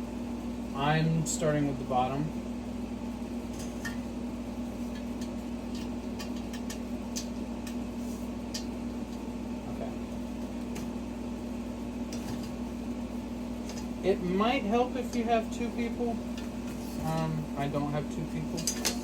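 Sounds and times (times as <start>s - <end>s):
steady low room hum: 0.0s - 19.0s.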